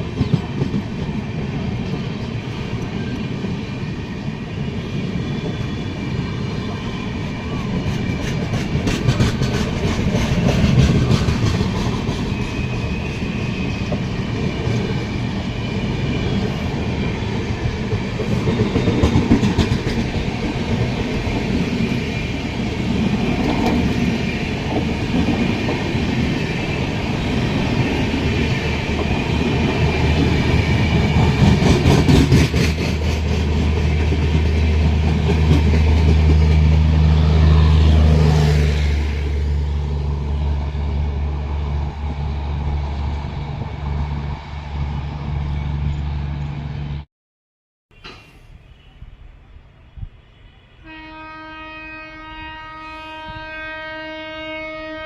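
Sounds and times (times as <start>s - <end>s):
train wheels clacking on track: 0.0s - 37.2s.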